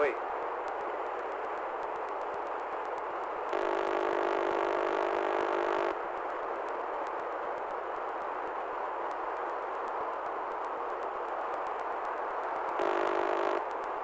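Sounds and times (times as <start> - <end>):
steady hiss: 0.0 - 14.0
steady pitched tone: 3.5 - 6.0, 12.8 - 13.6.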